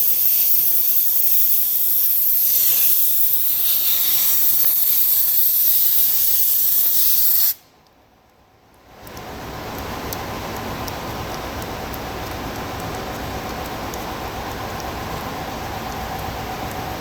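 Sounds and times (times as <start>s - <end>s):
loud steady hiss: 0.0s - 7.8s.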